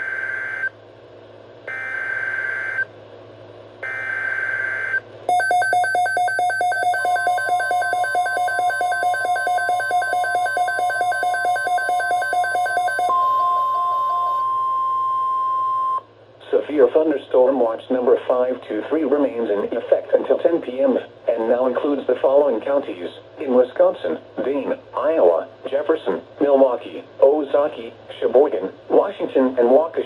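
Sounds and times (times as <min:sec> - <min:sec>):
steady warning tone: 0:03.8 - 0:16.1
pulsing buzzy alert tone: 0:05.3 - 0:14.4
warbling digital data tones: 0:05.3 - 0:14.5.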